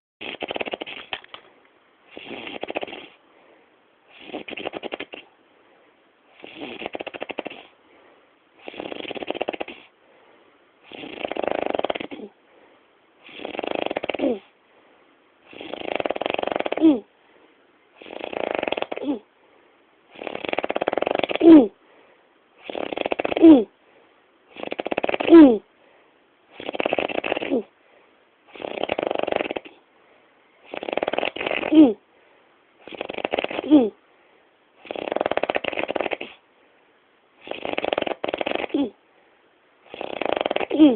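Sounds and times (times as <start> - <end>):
heavy rattling snoring: 0.2 - 1.3, 2.1 - 3.2, 4.1 - 5.3, 6.4 - 7.8, 8.6 - 9.9, 10.9 - 12.3, 13.2 - 14.4, 15.5 - 17.0, 18.0 - 19.2, 20.1 - 21.6, 22.6 - 23.6, 24.5 - 25.6, 26.5 - 27.7, 28.5 - 29.8, 30.6 - 32.0, 32.8 - 33.9, 34.8 - 36.4, 37.4 - 38.9, 39.8 - 40.9
quiet breathing: 0.2 - 40.9.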